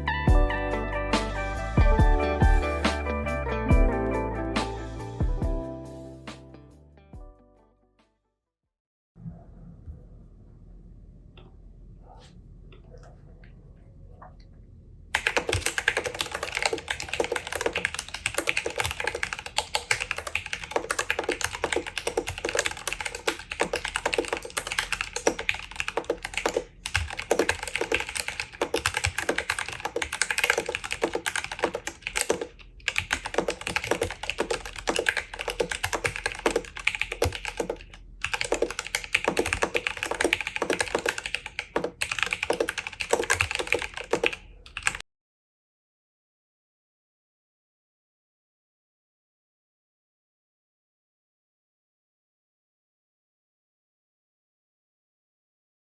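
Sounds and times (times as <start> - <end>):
mechanical keyboard typing: 15.2 - 45.0.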